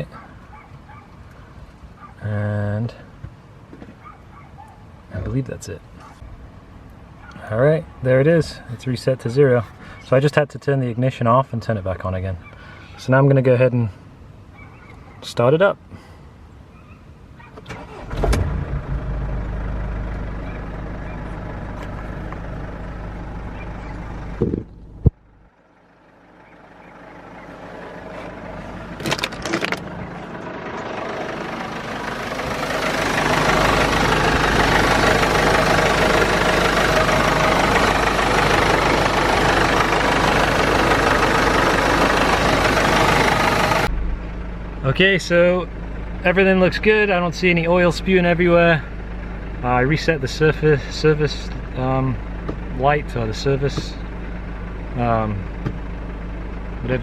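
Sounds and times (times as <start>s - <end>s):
diesel engine starting and idling: 17.5s - 57.0s.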